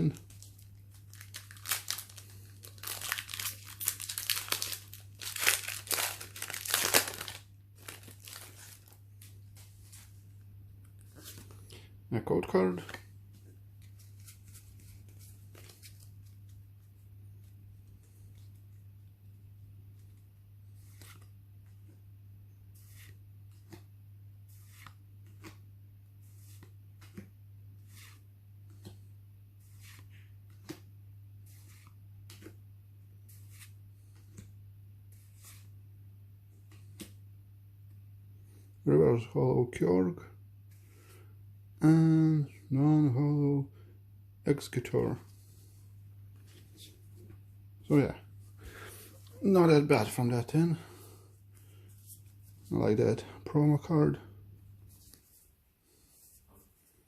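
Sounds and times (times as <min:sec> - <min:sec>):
foil wrapper crinkling: 0:00.1 - 0:09.0.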